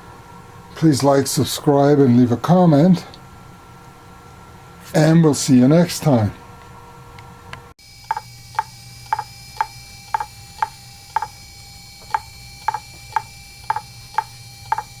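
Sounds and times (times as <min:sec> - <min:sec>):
low steady hum: 0:07.8 - 0:15.0
sharp ringing ticks: 0:07.8 - 0:15.0.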